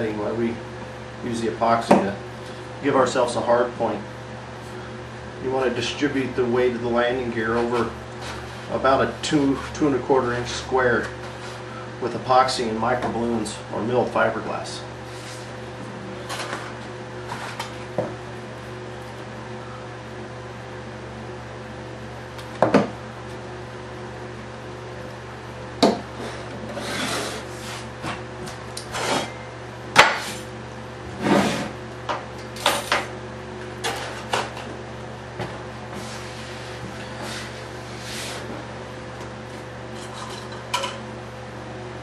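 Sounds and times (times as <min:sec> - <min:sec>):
steady electrical hum: 0:00.0 - 0:42.0
objects knocking on a workbench: 0:22.6 - 0:22.9, 0:25.8 - 0:26.0.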